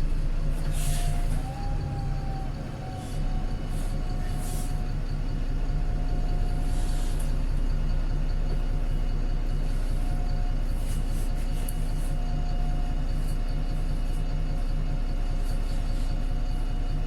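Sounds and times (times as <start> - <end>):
bus diesel engine running: 0.0 - 17.0.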